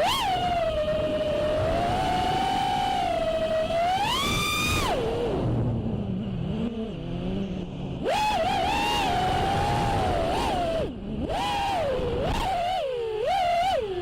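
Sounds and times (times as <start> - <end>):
drone motors whining: 0.0 - 14.0.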